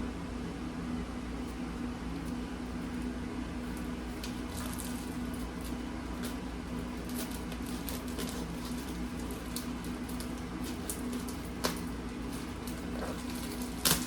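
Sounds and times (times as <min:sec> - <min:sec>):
steady low hum: 0:00.0 - 0:14.0
plastic and tape crinkling: 0:03.6 - 0:14.0.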